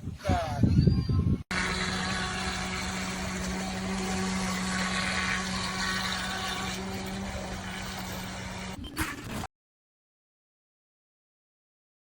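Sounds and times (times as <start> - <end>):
electric motor of a model boat: 1.5 - 8.8
water hissing: 1.5 - 8.8.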